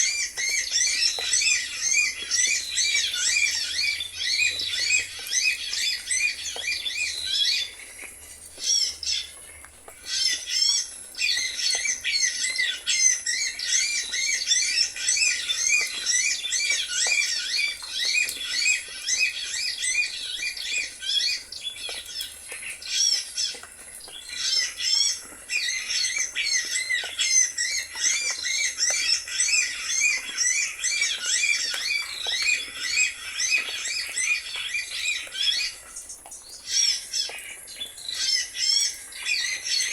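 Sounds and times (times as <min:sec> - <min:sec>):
bird chirping: 0:00.0 - 0:39.9.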